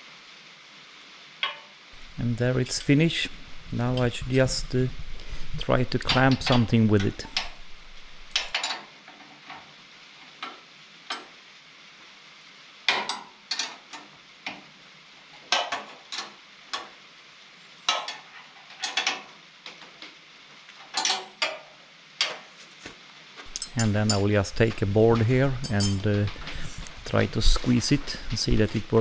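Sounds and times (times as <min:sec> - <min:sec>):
metallic clicks and knocks: 0:01.4 - 0:02.2, 0:03.6 - 0:09.7, 0:12.9 - 0:14.6, 0:15.4 - 0:16.9, 0:17.9 - 0:20.1, 0:20.8 - 0:22.5, 0:23.5 - 0:29.0.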